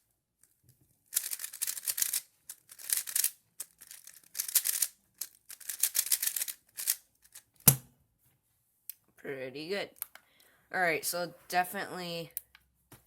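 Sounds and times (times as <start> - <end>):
puzzle cube clicking turns: 1.1 - 7.8.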